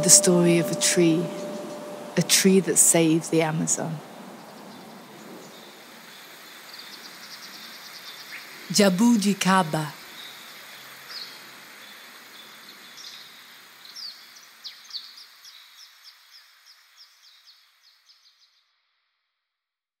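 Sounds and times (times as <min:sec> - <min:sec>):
bird chirping: 0:00.0 - 0:13.3
rainforest ambience: 0:00.0 - 0:18.8.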